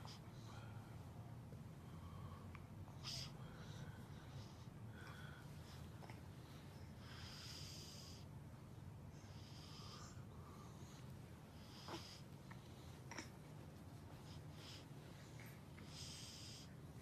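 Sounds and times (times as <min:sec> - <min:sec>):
low steady hum: 0:00.0 - 0:17.0.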